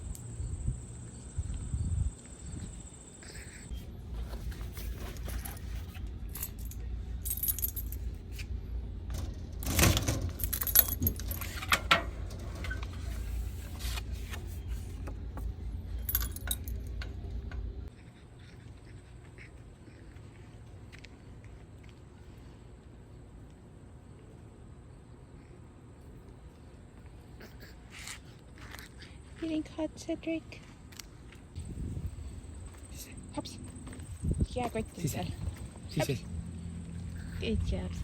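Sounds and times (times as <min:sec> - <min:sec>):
keys jangling: 0:04.8 - 0:08.4, 0:09.2 - 0:12.7, 0:16.0 - 0:17.1.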